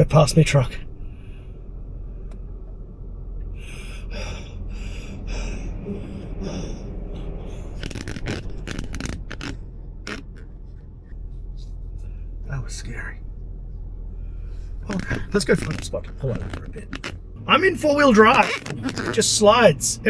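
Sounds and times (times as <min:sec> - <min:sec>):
low rumble inside truck cab: 0:00.0 - 0:20.0
breathy sounds: 0:03.4 - 0:10.8, 0:14.1 - 0:17.4
short scraping clicks: 0:07.8 - 0:10.6.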